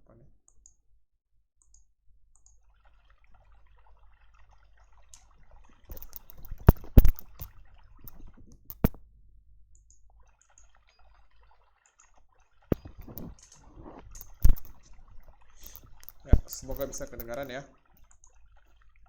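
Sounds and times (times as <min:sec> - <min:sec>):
sharp clicks: 0:05.9 - 0:07.5, 0:08.1 - 0:09.0, 0:14.2 - 0:14.9, 0:15.6 - 0:18.4.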